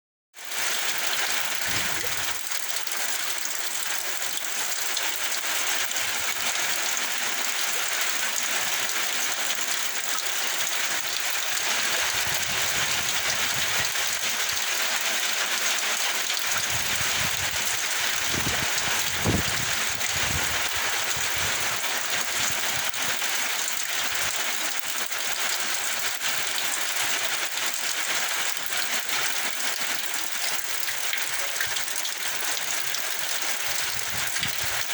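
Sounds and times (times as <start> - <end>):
heavy rain pouring: 0.4 - 34.9
gusting wind rumbles: 1.6 - 2.3, 16.7 - 21.6.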